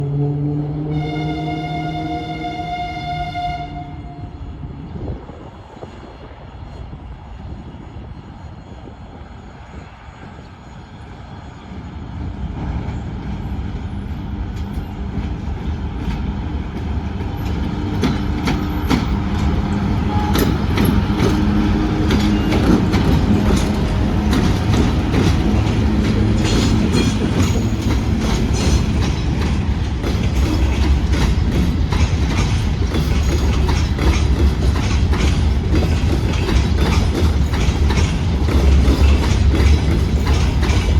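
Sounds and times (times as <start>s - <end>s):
diesel locomotive engine drone: 0.0s - 40.9s
train wheels clicking over rail joints: 12.8s - 40.9s.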